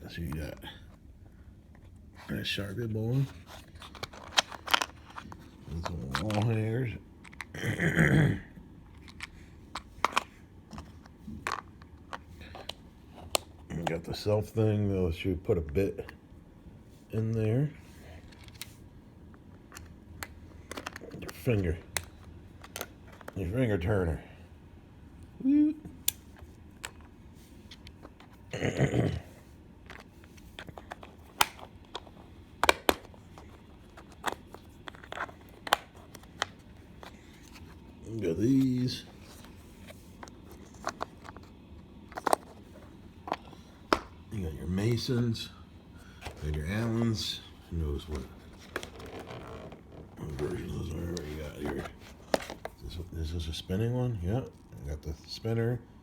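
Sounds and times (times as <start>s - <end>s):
metal bits clicking in plastic case: 20.7s - 21.4s
plastic case clicks and taps: 32.6s - 33.1s.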